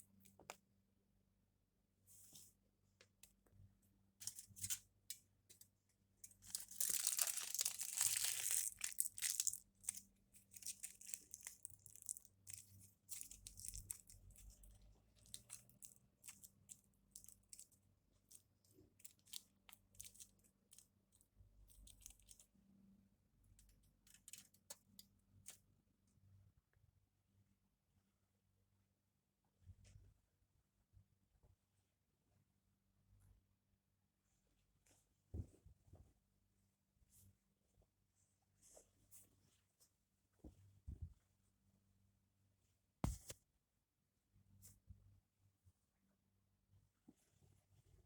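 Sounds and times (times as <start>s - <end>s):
small crackles and clicks: 4.2s - 22.7s, 23.5s - 25.7s
tearing crinkling rustle: 6.5s - 14.7s.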